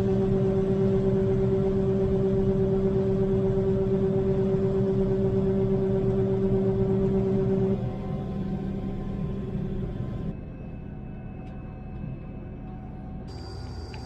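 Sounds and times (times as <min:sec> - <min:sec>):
combine harvester running: 0:00.0 - 0:10.3.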